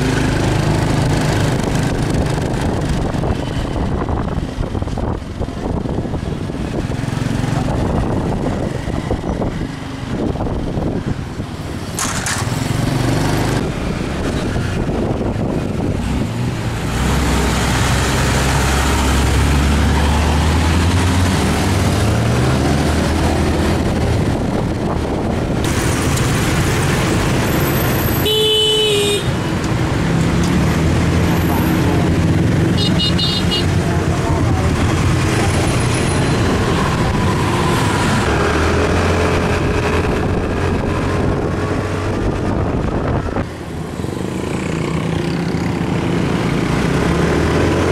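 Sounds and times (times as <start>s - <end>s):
traffic noise: 0.0s - 47.9s
vehicle horn honk: 28.2s - 29.3s, 32.8s - 33.7s.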